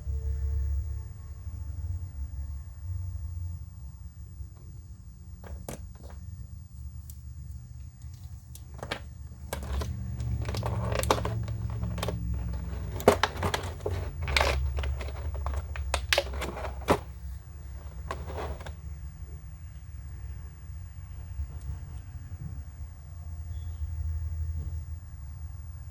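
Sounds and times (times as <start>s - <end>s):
packaging crinkling: 8.2s - 18.7s.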